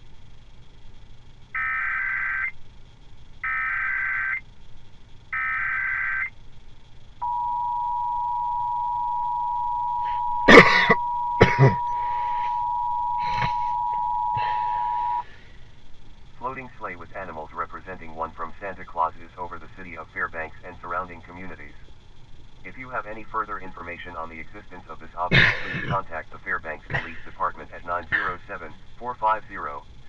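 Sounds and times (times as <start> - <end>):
data tone bursts: 1.6 - 2.5, 3.4 - 4.4, 5.4 - 6.3, 7.2 - 15.3
two-tone attention signal: 7.2 - 15.2.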